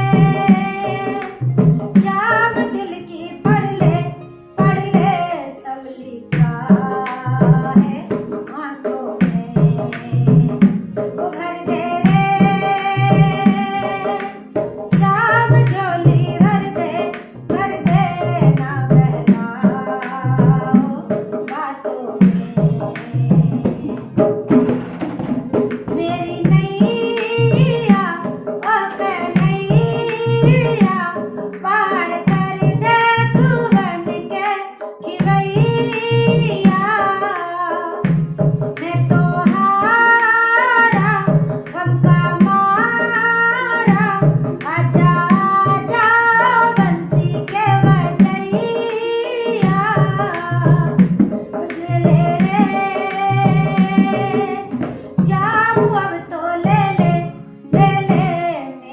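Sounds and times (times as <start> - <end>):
steady drum beat: 0.0 - 2.6, 9.2 - 21.2, 22.2 - 31.3, 32.3 - 34.3, 38.0 - 40.2, 43.7 - 56.0
woman singing: 0.0 - 24.3, 25.9 - 58.9.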